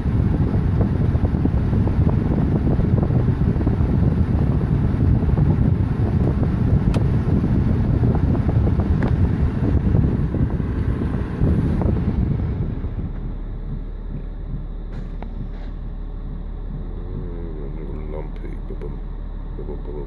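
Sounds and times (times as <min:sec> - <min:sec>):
diesel engine running unevenly: 0:00.0 - 0:20.0.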